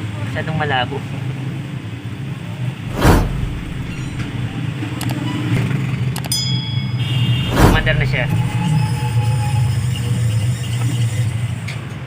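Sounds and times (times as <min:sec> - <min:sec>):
loud thump: 0:02.9 - 0:04.6, 0:07.4 - 0:08.7.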